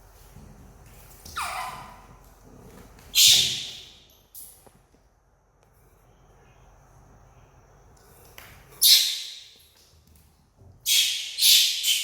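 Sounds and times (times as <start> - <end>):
monkey screeching: 1.4 - 2.0, 10.9 - 12.0.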